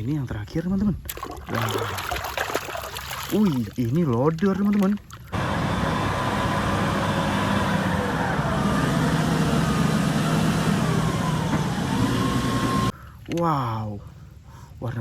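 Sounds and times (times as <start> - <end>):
heavy vehicle engine running: 5.4 - 12.9.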